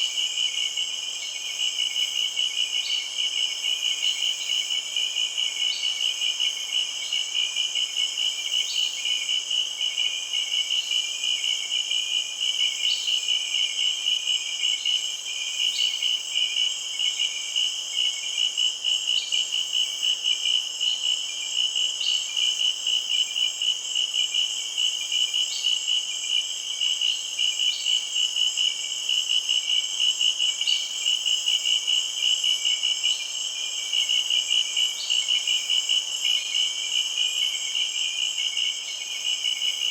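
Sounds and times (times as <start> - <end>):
continuous high insect buzz: 0.0 - 39.9
insects chirping: 0.0 - 39.9.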